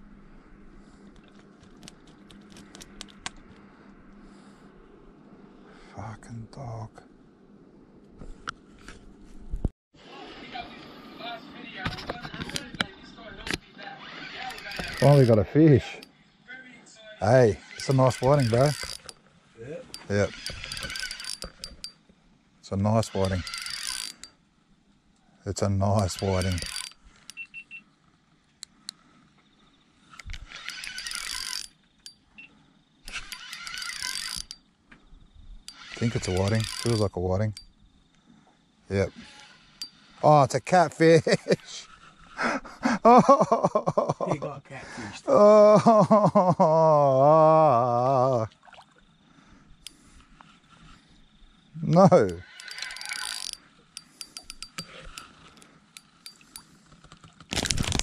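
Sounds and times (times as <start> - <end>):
sharp clicks: 1.1 - 3.7, 14.4 - 16.1, 19.9 - 22.0, 25.9 - 27.5, 30.1 - 32.2, 33.0 - 34.6, 35.7 - 37.7, 51.8 - 58.0
fishing reel cranking: 13.9 - 16.1, 17.2 - 19.2, 19.8 - 22.1, 22.8 - 24.4, 25.6 - 27.5, 30.1 - 32.2, 33.0 - 34.7, 35.6 - 37.7, 38.9 - 42.4, 51.8 - 58.0
brief rustle: 52.6 - 58.0.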